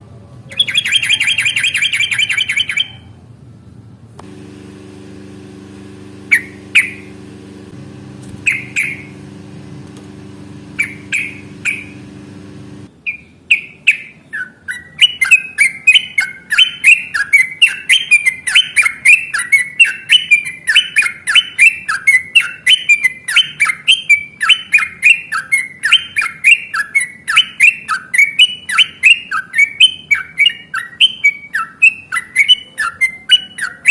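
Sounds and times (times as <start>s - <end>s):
bird singing: 0.5s - 3.1s, 6.2s - 7.2s, 8.4s - 9.3s, 10.7s - 12.0s, 12.9s - 33.9s
steady low hum: 4.0s - 12.9s.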